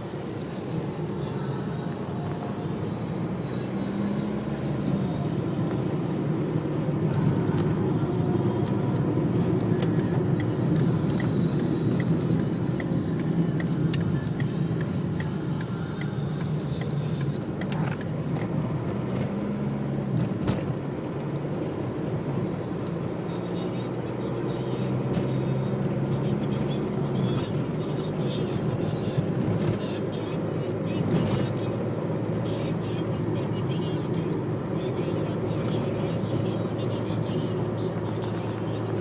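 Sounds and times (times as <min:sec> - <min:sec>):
car engine and road rumble: 0:00.0 - 0:39.0
sharp clicks: 0:08.6 - 0:18.6.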